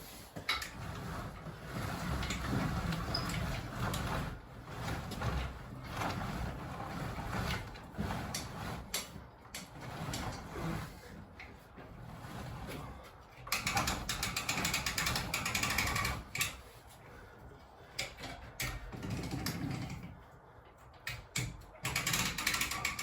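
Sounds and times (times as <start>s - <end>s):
hand winch ratchet clicking: 13.5s - 16.6s, 21.0s - 23.0s.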